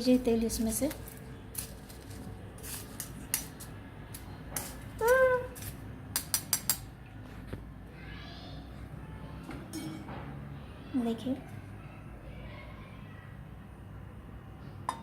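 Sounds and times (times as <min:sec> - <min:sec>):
metal spoon scraping strainer: 0:00.9 - 0:05.8.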